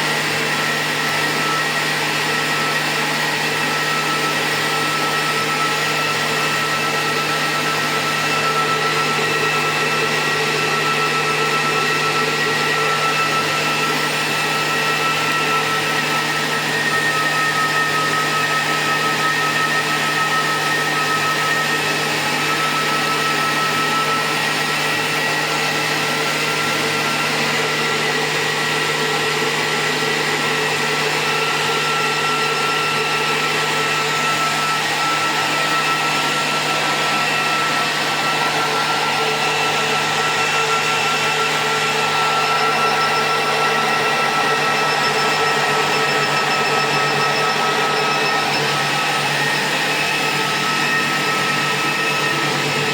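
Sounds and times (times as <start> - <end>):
motor and fan whir: 0.0 - 52.9
high whine: 31.0 - 52.9.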